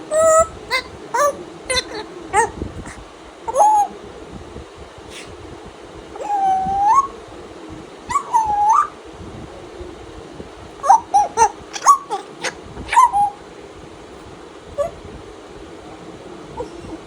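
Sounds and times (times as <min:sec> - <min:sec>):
parrot calling: 0:00.0 - 0:04.1, 0:06.1 - 0:07.3, 0:08.0 - 0:09.0, 0:10.7 - 0:13.5, 0:14.8 - 0:15.0.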